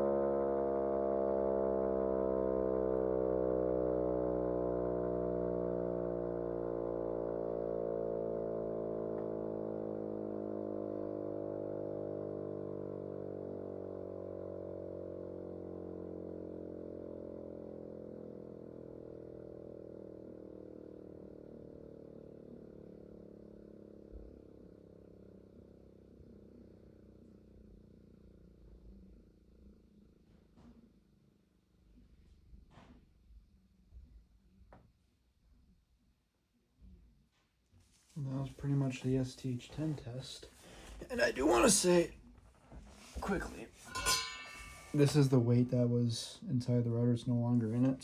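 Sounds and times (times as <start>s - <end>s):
siren winding down: 0.0s - 22.8s.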